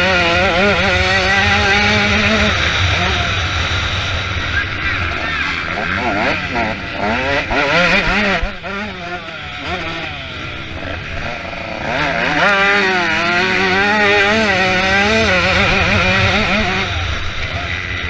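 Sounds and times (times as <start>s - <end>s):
motocross engines revving: 0.0s - 18.0s.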